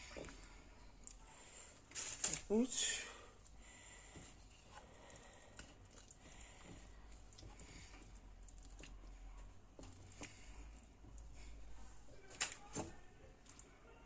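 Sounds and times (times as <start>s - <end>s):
faint clicks and taps: 3.4s - 11.5s.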